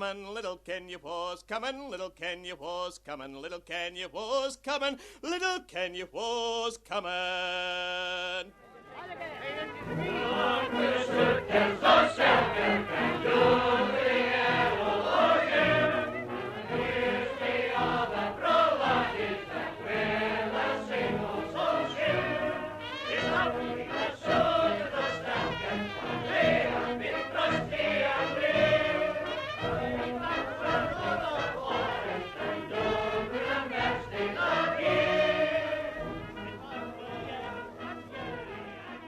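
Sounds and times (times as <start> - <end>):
choir singing: 7.6 - 39.0
instrumental accompaniment: 8.5 - 39.0.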